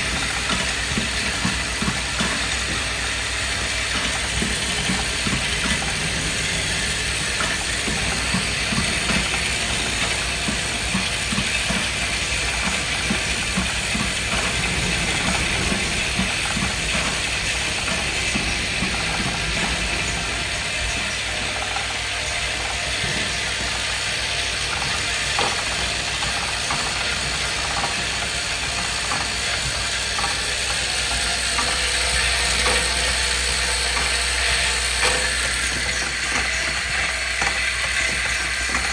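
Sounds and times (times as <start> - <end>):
machine clattering with clicks: 0.0 - 38.9.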